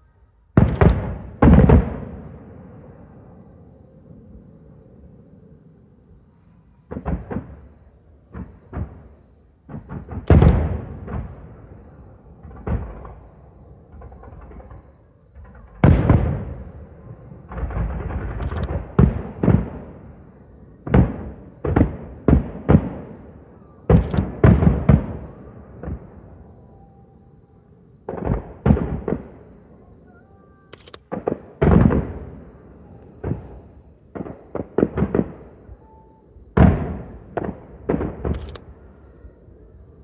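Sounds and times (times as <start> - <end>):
fireworks booming: 0.6 - 3.5, 6.8 - 23.3, 23.9 - 26.3, 28.1 - 29.7, 31.1 - 38.9.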